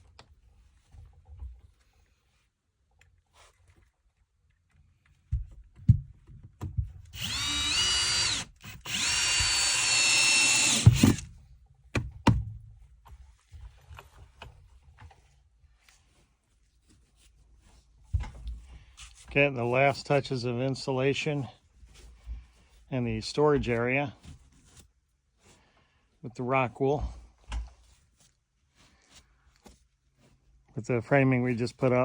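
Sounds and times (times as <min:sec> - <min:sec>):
power drill driving screws: 0:07.1 - 0:11.3.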